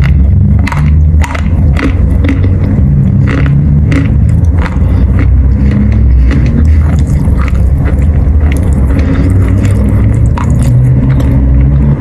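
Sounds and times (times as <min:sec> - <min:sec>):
chalk crunching in mouth: 0:00.0 - 0:11.8
steady low rumble: 0:00.0 - 0:12.0.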